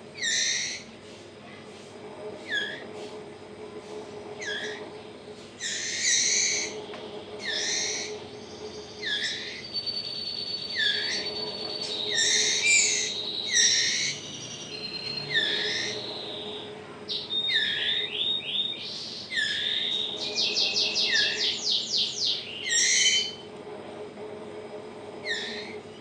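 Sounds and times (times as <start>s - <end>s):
fledglings chirping begging calls: 0.2s - 0.9s, 4.4s - 4.8s, 5.6s - 6.8s, 7.4s - 23.4s, 25.2s - 25.8s.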